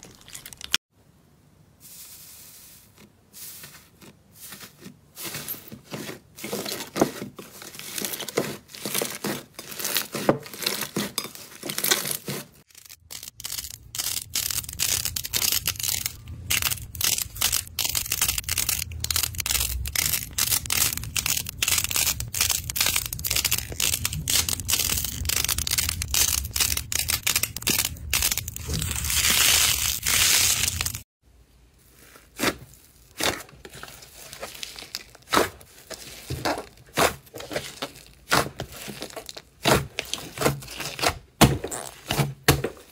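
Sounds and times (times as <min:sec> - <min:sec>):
slime crackling and crunching: 0:06.5 - 0:31.1, 0:31.8 - 0:42.6.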